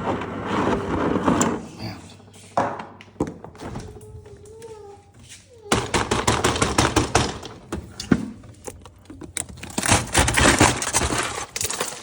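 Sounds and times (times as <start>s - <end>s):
ice cubes clattering: 9.2s - 12.0s.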